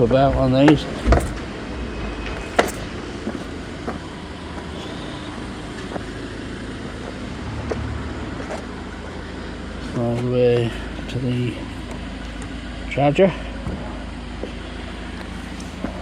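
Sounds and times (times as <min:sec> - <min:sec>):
low outdoor rumble: 0:00.0 - 0:16.0
short knocks: 0:00.2 - 0:01.6.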